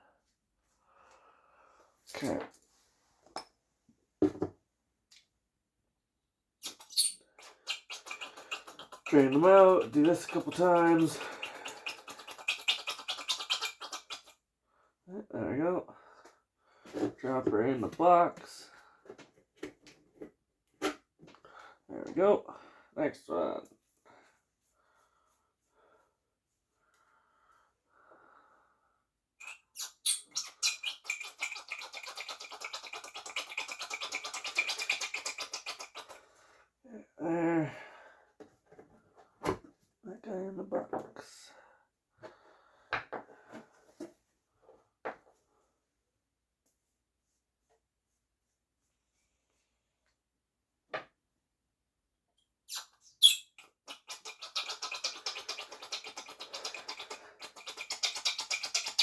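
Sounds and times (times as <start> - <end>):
short squeaky strokes: 6.6 - 7.2, 52.7 - 53.6
shock pump squeaky chirps: 6.6 - 14.2, 29.4 - 31.6, 52.7 - 54.1.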